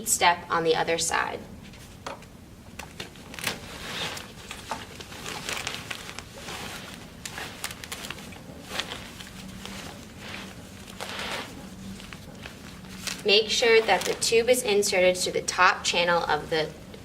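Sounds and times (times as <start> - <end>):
plastic parts rustling and knocking: 2.0 - 13.3.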